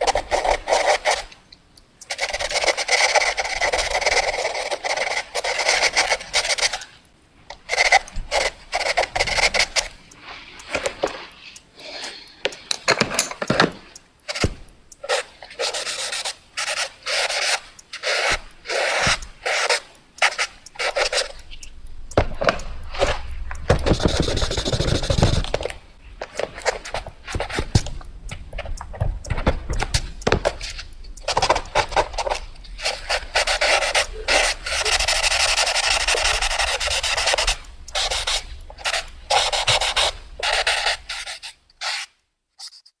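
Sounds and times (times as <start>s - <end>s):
pencil scratching on paper: 0.0s - 1.3s, 2.1s - 6.9s, 7.7s - 10.0s, 14.3s - 21.4s, 22.1s - 27.9s, 29.2s - 42.1s.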